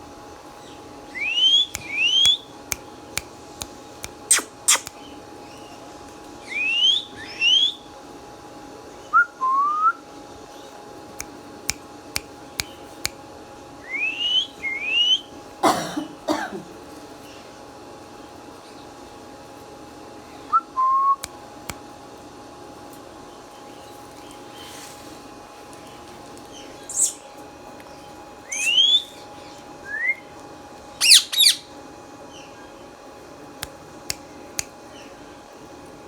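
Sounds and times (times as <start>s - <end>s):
parakeet whistling: 1.2s - 2.5s, 4.3s - 4.9s, 28.5s - 29.1s, 31.0s - 31.7s
sharp clicks: 1.8s - 5.0s
raspy cough-like burst: 15.6s - 16.8s.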